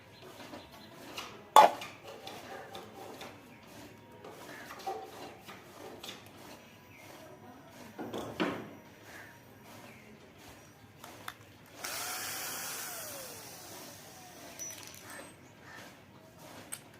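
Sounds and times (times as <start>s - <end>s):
light clinks and rustles: 14.5s - 15.4s.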